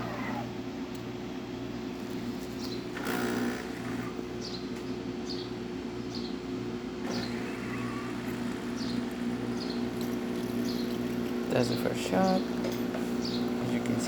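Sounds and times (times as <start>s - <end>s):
water pump humming: 6.6s - 14.0s.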